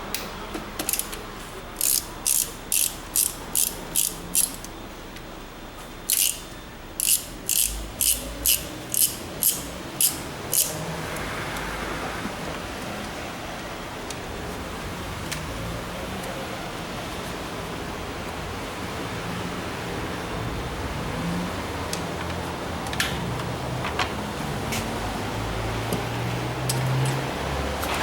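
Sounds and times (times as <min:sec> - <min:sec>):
ratchet wrench clicking: 0:00.8 - 0:01.2, 0:01.8 - 0:04.7, 0:06.1 - 0:10.8.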